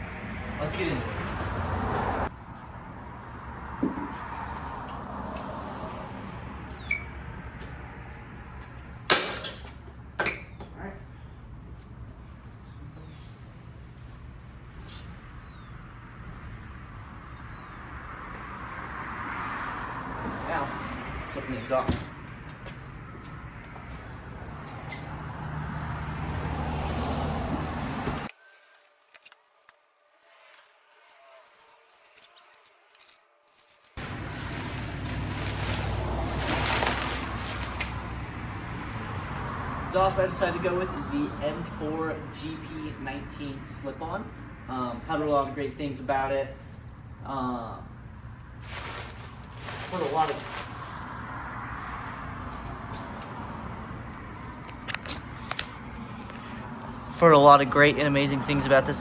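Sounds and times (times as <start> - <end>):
vehicle engine running: 34.0 - 39.4.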